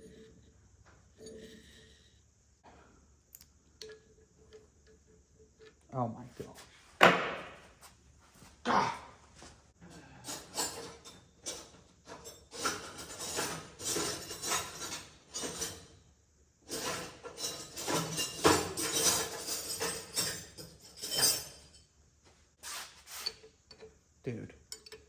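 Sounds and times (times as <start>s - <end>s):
metal tools clinking and clattering: 10.2s - 16.0s, 16.7s - 21.9s, 24.6s - 25.0s.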